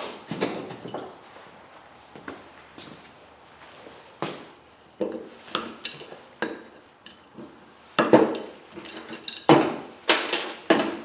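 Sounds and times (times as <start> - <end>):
metal parts and tools clinking: 8.4 - 9.5.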